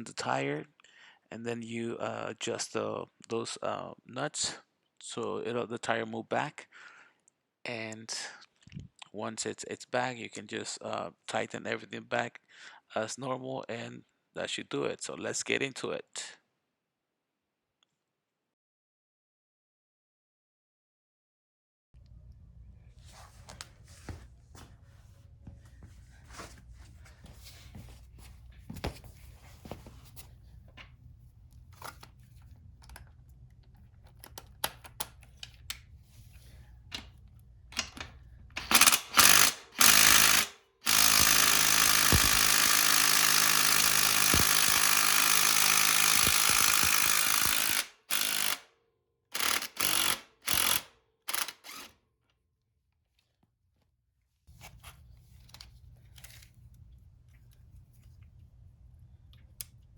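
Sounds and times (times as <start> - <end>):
tool handling clicks: 31.6 - 36.0, 36.9 - 43.0
handheld power tool running: 37.8 - 48.7, 49.3 - 52.0.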